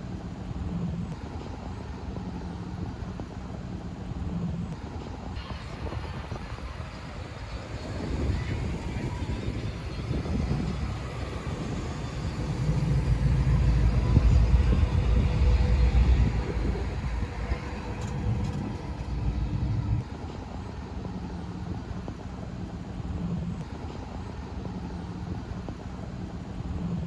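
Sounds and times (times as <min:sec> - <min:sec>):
car engine rumbling: 0:05.4 - 0:20.0.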